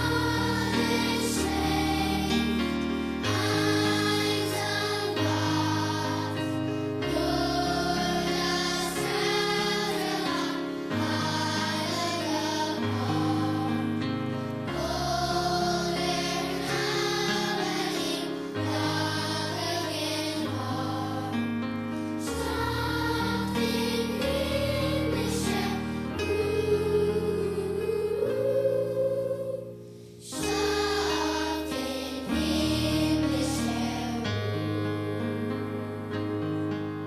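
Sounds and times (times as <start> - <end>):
choir singing: 0.0 - 21.6, 22.2 - 36.1.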